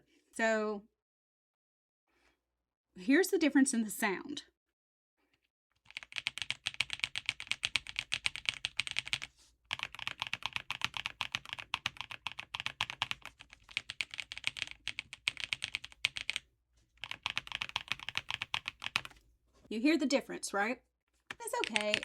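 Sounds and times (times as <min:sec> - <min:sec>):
mechanical keyboard typing: 0:05.9 - 0:16.4, 0:17.0 - 0:19.2, 0:21.3 - 0:22.0.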